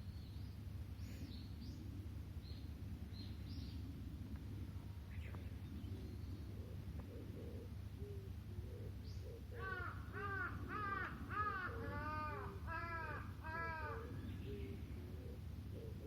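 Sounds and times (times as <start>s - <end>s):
crow cawing: 9.6s - 14.2s.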